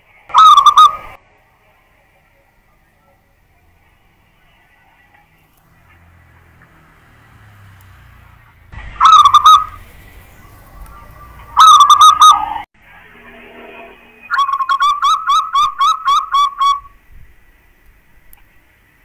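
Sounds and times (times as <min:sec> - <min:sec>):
dove cooing: 0:00.3 - 0:01.2, 0:08.9 - 0:12.6.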